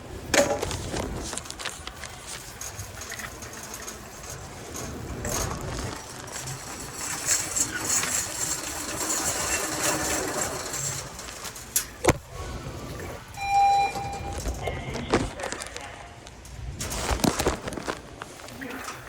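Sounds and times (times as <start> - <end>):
steady clatter: 0.3 - 13.4
faint voices: 1.7 - 16.6.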